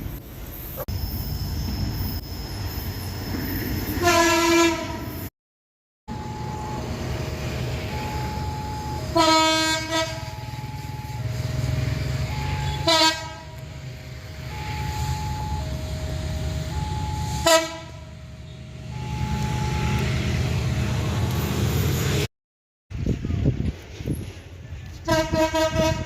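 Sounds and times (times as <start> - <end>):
locomotive air horn blasts: 4.0 - 5.1, 7.9 - 11.4, 12.3 - 13.6, 16.7 - 20.0, 25.0 - 26.0
two-note electronic warning tone: 6.1 - 7.0, 7.9 - 9.2, 12.3 - 12.8, 14.5 - 16.0, 16.7 - 17.6, 18.9 - 20.1
train rumble: 6.1 - 22.3, 22.9 - 26.0.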